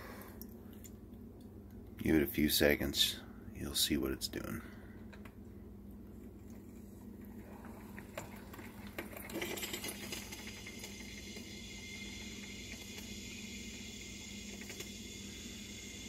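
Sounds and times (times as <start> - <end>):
crackle: 6.3 - 16.0.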